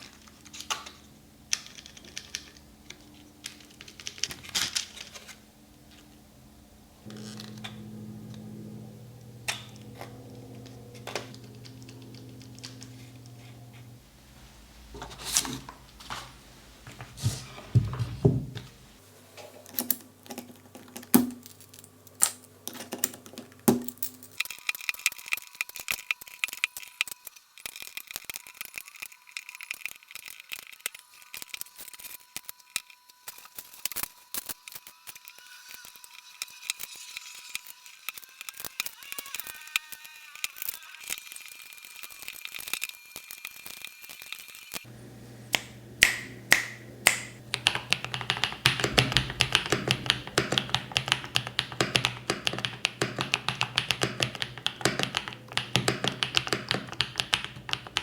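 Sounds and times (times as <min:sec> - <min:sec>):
mechanical keyboard typing: 0:46.0 - 0:58.0.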